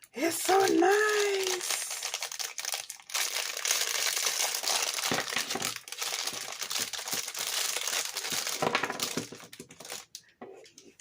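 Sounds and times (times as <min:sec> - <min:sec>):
packaging crinkling and rustling: 0:00.4 - 0:10.2.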